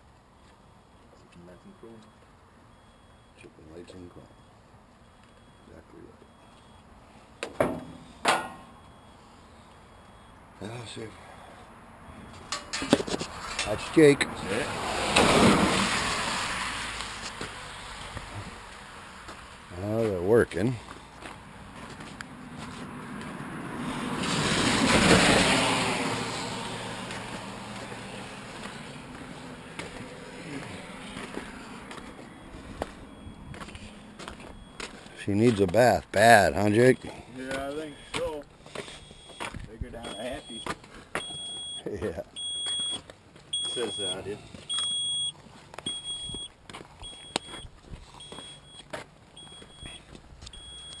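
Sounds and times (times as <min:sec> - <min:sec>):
vehicle noise: 0:00.0 - 0:51.0
high electronic warning beep: 0:00.4 - 0:12.6, 0:29.8 - 0:51.0.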